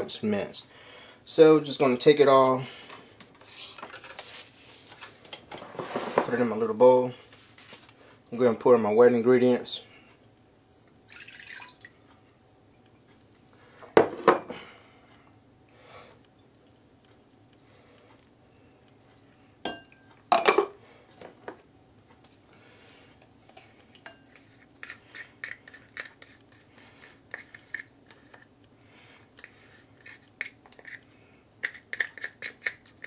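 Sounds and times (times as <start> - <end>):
liquid pouring: 11.1 - 12.0
utensil scraping bowl: 23.6 - 28.5, 29.4 - 33.0.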